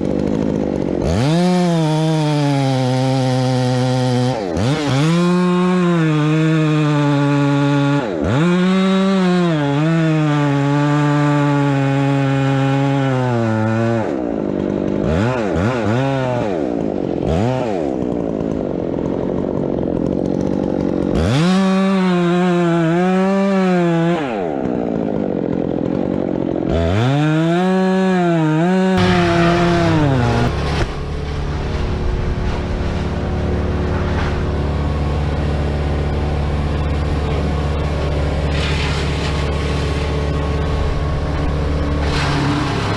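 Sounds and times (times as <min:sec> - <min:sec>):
chainsaw revving: 0:00.0 - 0:42.9
low engine drone: 0:29.0 - 0:42.9.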